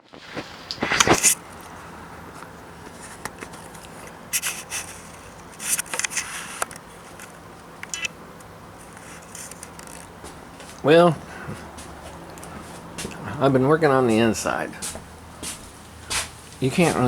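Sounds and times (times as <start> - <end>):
scrapes and rustles: 0.0 - 7.4, 8.8 - 10.8
low background hum: 0.0 - 17.0.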